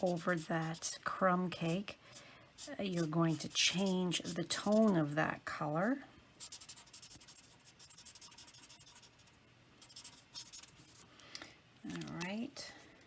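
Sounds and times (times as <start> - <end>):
marker scratching on cardstock: 0.0 - 1.9, 2.6 - 5.1, 6.4 - 11.0.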